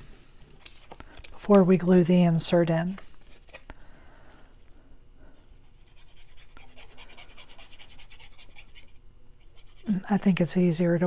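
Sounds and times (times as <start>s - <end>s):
scratching on paper: 5.6s - 10.2s.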